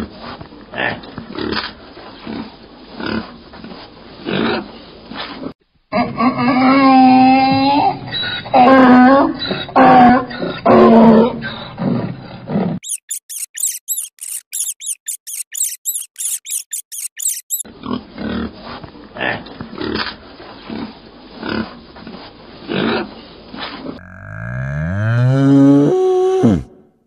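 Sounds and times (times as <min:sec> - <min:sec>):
rapid high-pitched chirps: 0:12.8 - 0:17.6
lower animal calls: 0:24.0 - 0:25.0.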